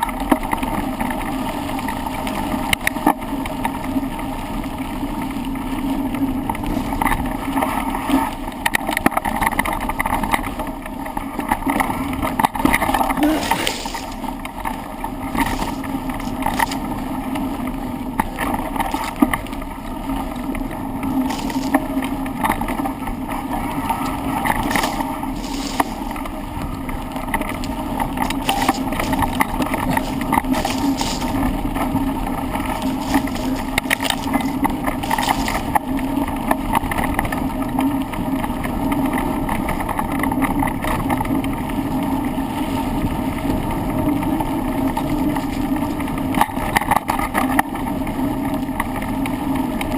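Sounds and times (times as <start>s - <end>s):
bicycle rushing rumble: 0.0s - 49.9s.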